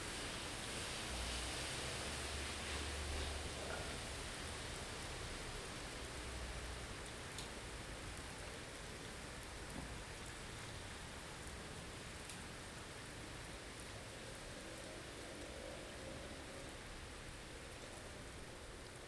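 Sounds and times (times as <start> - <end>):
hiss of wind-driven snow: 0.0 - 6.4.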